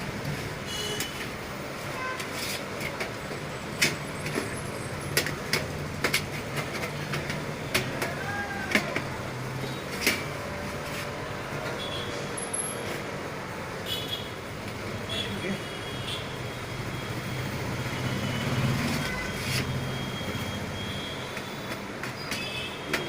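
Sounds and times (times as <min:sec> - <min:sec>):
computer parts clicking and knocking: 0:02.8 - 0:10.4, 0:21.2 - 0:23.0.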